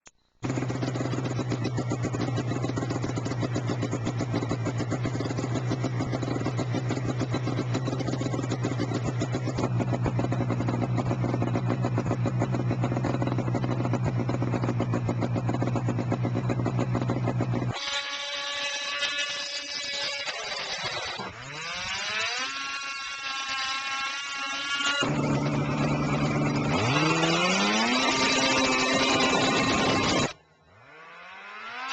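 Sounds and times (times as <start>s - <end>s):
snowmobile engine running steadily: 0.4s - 17.8s, 25.0s - 30.4s.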